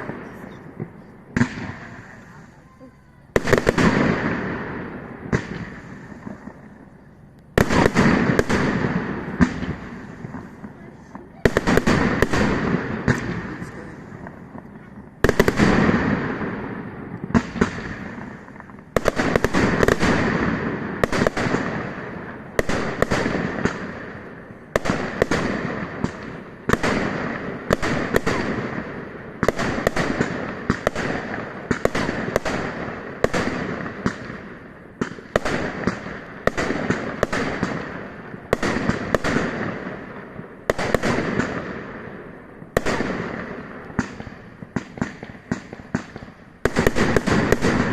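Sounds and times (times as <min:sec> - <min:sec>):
rumble and crackle: 0:13.1 - 0:15.2.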